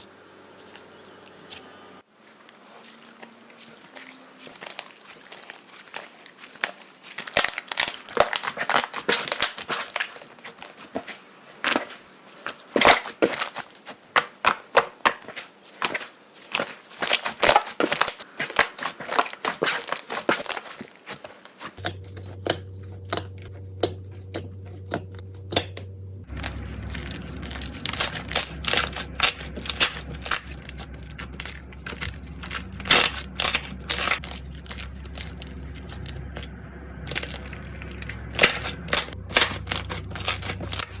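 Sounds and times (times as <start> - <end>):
slime crackling and popping: 4.5 - 10.2, 21.7 - 41.0.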